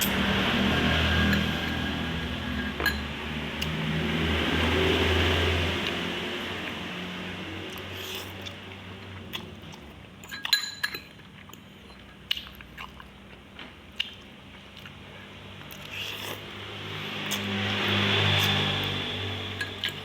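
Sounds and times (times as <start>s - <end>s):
chewing noodle soup: 5.1s - 20.0s.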